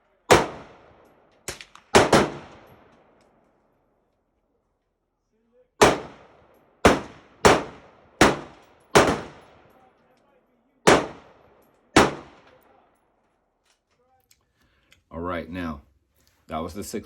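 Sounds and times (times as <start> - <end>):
pistol gunshots: 0.3 - 3.1, 5.8 - 9.7, 10.8 - 12.6.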